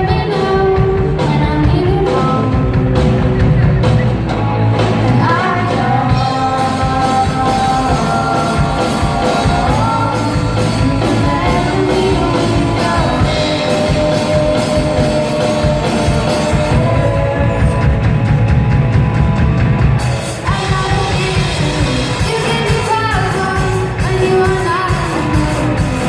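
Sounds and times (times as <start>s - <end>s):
rock band playing: 0.0s - 26.0s
person singing long notes: 5.1s - 18.5s.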